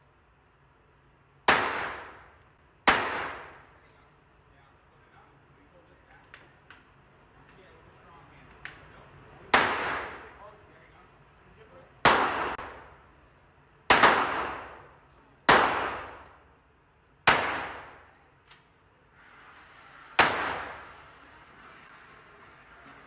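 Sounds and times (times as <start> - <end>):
pistol shots echoing: 1.5 - 3.6, 9.5 - 10.3, 12.0 - 12.8, 13.9 - 14.9, 15.5 - 16.4, 17.2 - 18.1.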